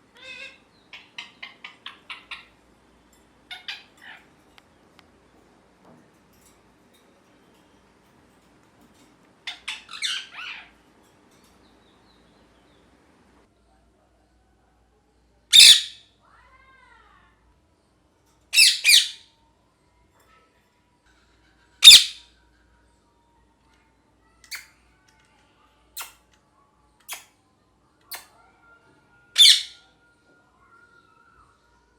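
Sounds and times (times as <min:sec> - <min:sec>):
parakeet squawking: 0:00.2 - 0:02.6, 0:03.4 - 0:04.4, 0:09.4 - 0:10.8, 0:15.5 - 0:16.0, 0:18.6 - 0:19.2, 0:21.8 - 0:22.2, 0:29.4 - 0:29.9.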